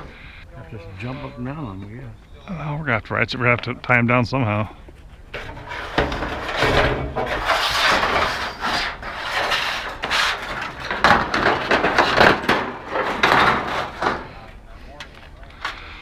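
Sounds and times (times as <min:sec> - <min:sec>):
scrap scraping and knocking: 0:05.1 - 0:15.9.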